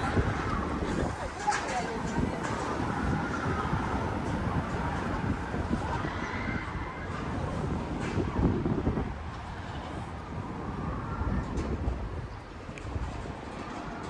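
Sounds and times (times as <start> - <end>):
steady low city rumble: 0.0 - 14.0.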